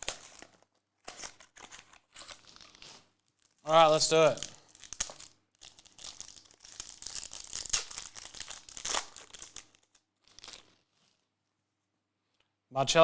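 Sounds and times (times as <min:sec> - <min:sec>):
plastic wrapping crinkling and tearing: 0:00.0 - 0:11.2.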